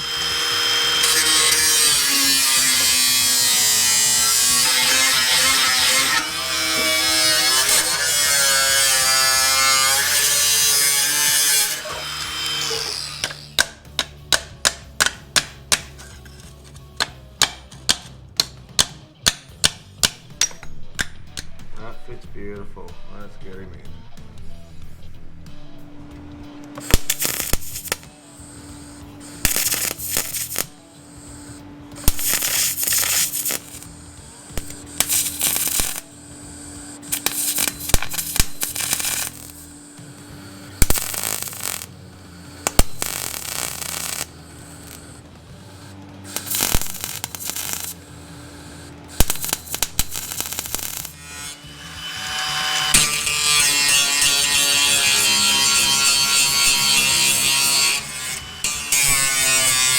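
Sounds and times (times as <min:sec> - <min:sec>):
grinder running at high speed: 0:00.0 - 0:13.6, 0:26.3 - 0:59.9
power tool noise bursts: 0:00.0 - 0:13.6, 0:26.7 - 0:59.9
quiet background music: 0:00.0 - 0:59.9.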